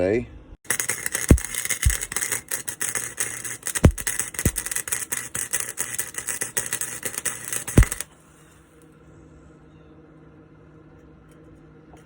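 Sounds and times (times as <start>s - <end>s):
welding arc crackling: 0.6s - 8.1s.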